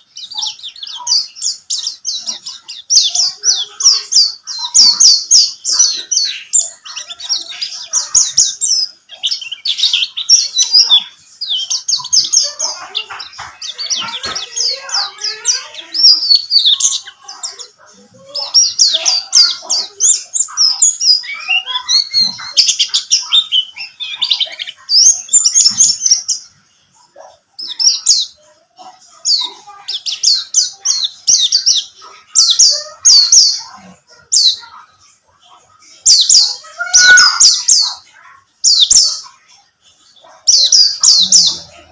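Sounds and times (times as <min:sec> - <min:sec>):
bird chattering song: 0:00.0 - 0:41.9.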